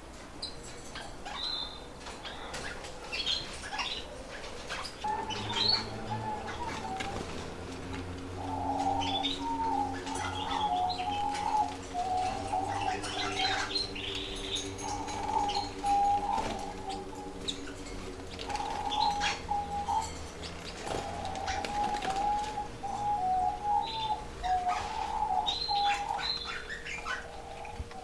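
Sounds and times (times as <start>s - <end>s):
canaries chirping and warbling: 0.1s - 28.0s.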